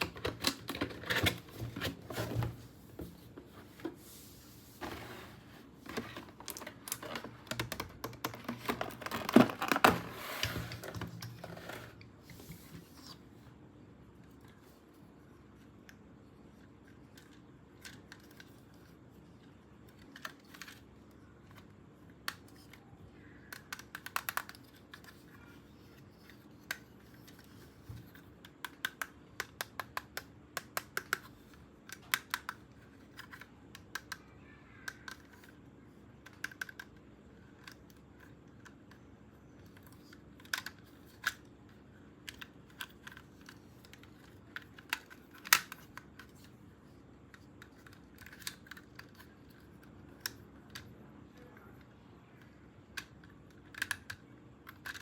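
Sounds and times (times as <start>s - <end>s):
handling cardboard and plastic packaging: 0.0s - 13.0s.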